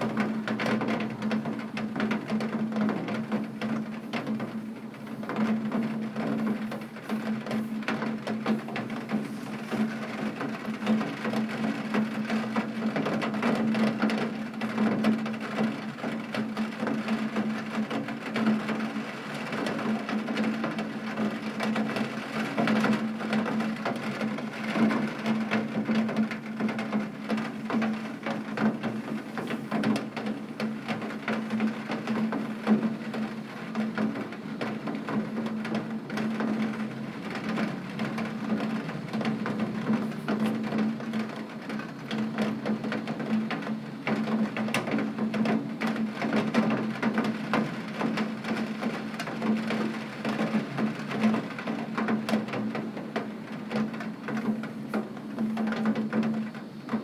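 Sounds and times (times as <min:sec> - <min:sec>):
heavy rain on window: 0:00.0 - 0:57.0.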